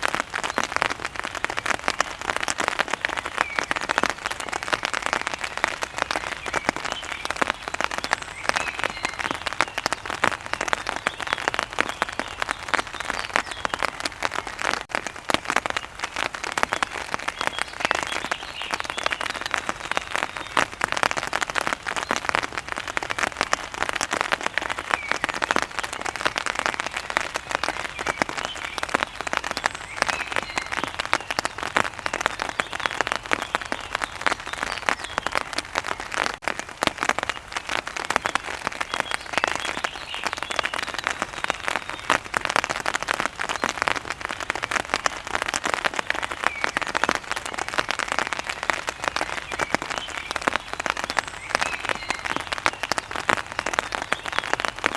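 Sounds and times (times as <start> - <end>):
rain pattering on a surface: 0.0 - 54.9.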